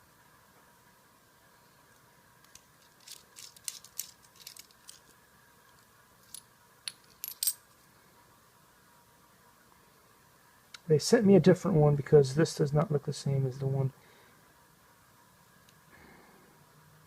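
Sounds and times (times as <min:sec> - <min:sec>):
handling clicks and clinks: 0:02.5 - 0:05.2, 0:06.2 - 0:07.6.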